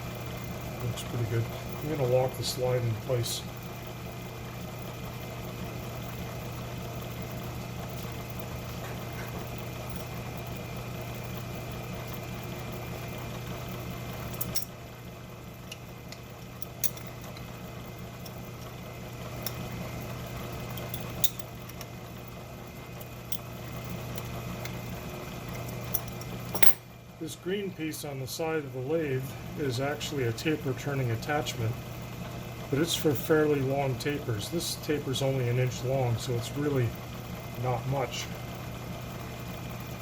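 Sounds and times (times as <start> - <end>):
metalworking lathe humming: 0.0 - 26.8.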